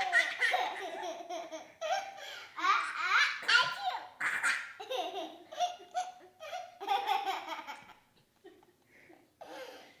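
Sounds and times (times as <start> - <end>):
baby laughing: 0.0 - 8.0.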